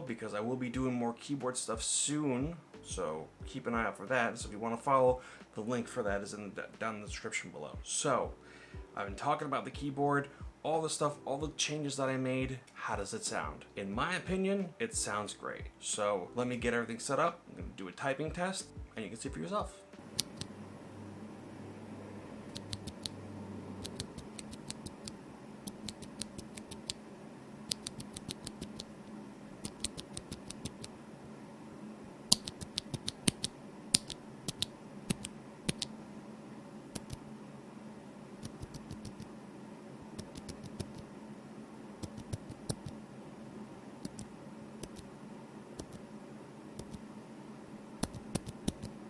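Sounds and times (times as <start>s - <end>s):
quiet keyboard typing: 22.5s - 23.2s, 23.8s - 27.0s, 27.7s - 29.0s, 29.6s - 30.9s, 32.3s - 35.9s, 36.9s - 37.2s, 38.4s - 39.3s, 40.2s - 41.1s, 42.0s - 43.0s, 44.0s - 45.1s, 45.8s - 46.0s, 46.8s - 47.0s, 48.0s - 49.0s.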